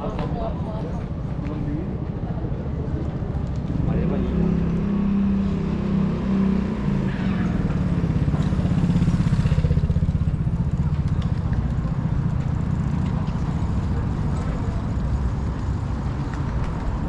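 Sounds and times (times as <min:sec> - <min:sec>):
vehicle engine running: 0:06.8 - 0:16.9.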